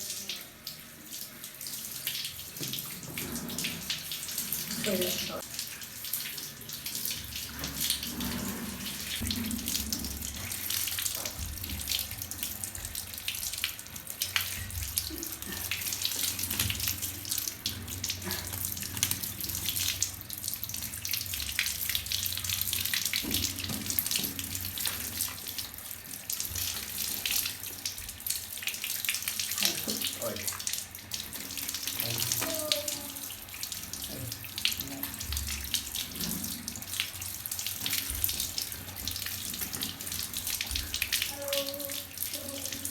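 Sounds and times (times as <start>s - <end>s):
water running and splashing: 0.0s - 42.9s.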